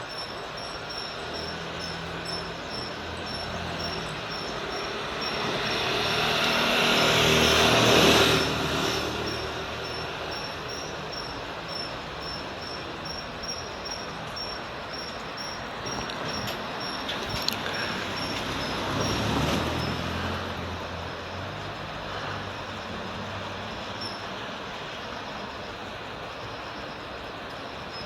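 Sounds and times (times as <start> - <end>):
insects chirping: 0.0 - 28.0
vehicle passing by: 1.1 - 12.8, 15.7 - 25.0.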